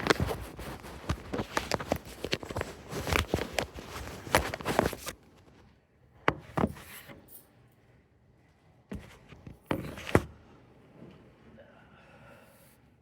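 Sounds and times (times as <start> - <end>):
rustling: 0.0 - 5.8.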